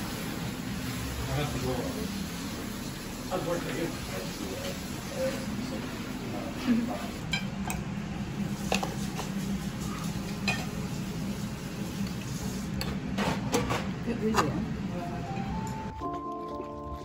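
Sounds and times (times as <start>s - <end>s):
utensils clinking against dishes: 7.2s - 7.8s, 8.7s - 10.8s.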